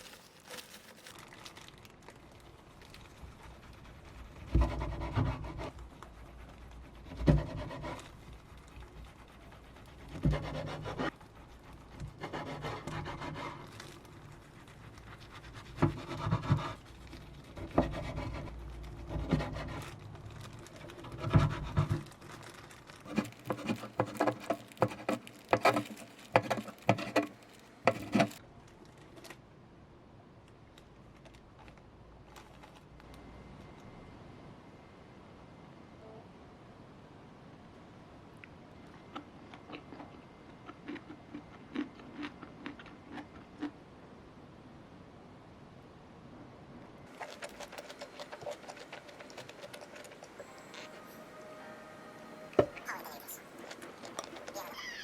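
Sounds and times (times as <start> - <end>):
kitchen utensils scraping: 49.0 - 55.0.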